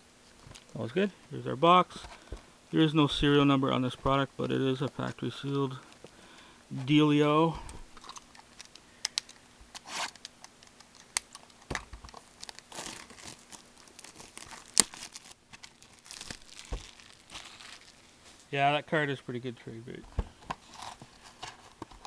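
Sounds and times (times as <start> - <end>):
plastic wrapping crinkling: 8.0 - 18.5.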